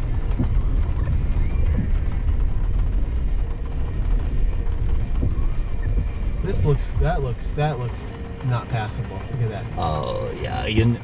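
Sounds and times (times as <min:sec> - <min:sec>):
vehicle driving on dirt track: 0:00.0 - 0:11.0.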